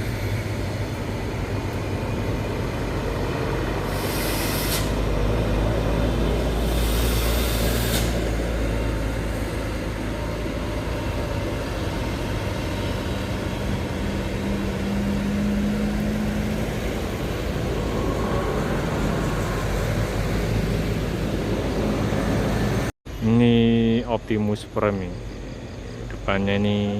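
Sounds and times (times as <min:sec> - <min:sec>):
large vehicle passing: 0:00.0 - 0:22.9
diesel engine rumble: 0:00.0 - 0:26.9
air hiss: 0:03.9 - 0:05.1, 0:06.5 - 0:08.6.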